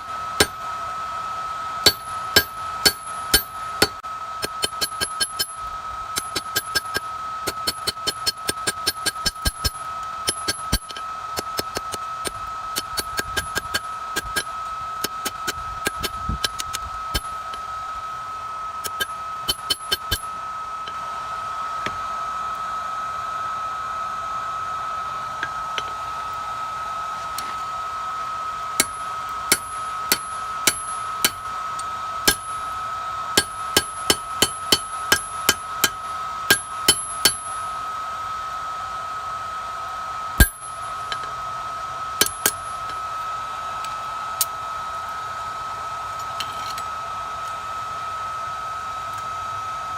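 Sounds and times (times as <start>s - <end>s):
forge blower whirring: 0.0s - 49.9s
hammer striking steel on anvil: 0.4s - 0.6s, 1.8s - 5.6s, 6.2s - 17.6s, 18.8s - 20.3s, 28.8s - 31.4s, 32.3s - 32.6s, 33.4s - 37.5s, 40.4s - 41.3s, 42.2s - 43.0s.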